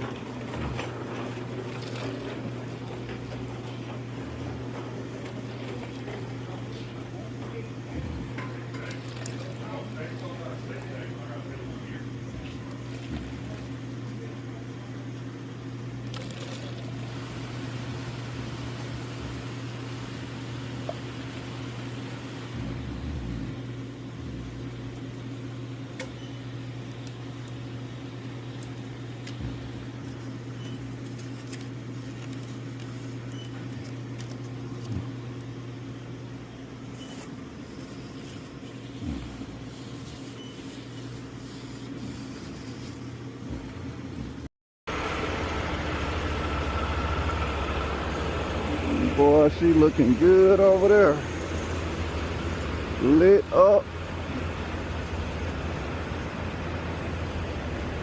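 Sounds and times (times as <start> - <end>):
truck diesel engine and road noise: 16.9 - 25.4, 44.9 - 58.0.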